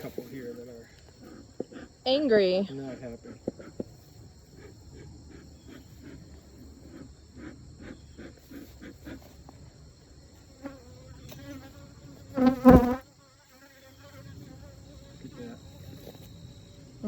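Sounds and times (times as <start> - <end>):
honeybees buzzing: 0.0 - 17.0
bee flying past microphone: 10.6 - 14.9.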